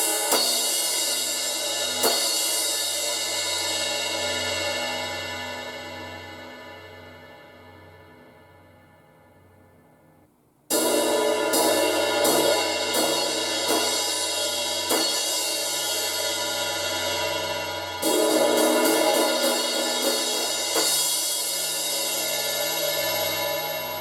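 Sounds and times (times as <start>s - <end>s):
crash cymbal struck: 0.0s - 8.0s, 10.7s - 24.0s.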